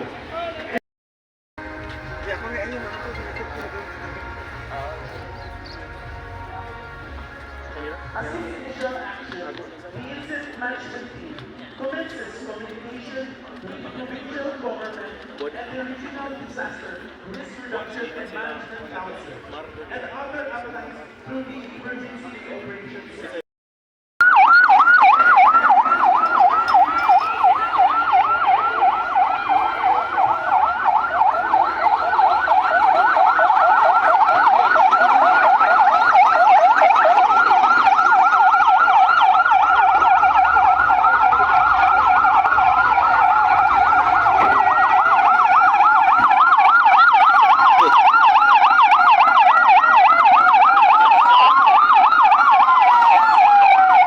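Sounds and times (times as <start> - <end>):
wailing siren: 1.6 - 8.7, 24.2 - 54.0
yelp siren: 24.2 - 54.0.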